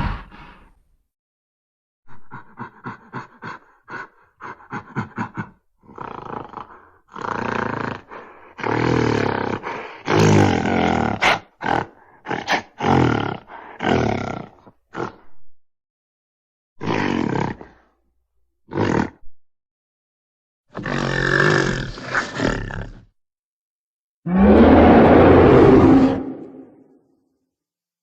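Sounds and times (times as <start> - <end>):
gorilla grunts: 2.1 - 15.4
gorilla roars: 2.1 - 15.4, 16.8 - 17.9, 18.7 - 19.2, 20.8 - 23.0, 24.2 - 27.0.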